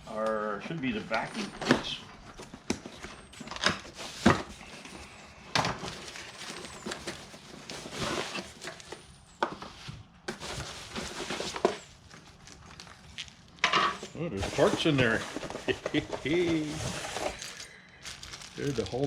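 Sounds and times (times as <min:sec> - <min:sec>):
cardboard box scrapes and rustles: 0:05.9 - 0:08.9, 0:10.3 - 0:11.9, 0:14.0 - 0:17.7.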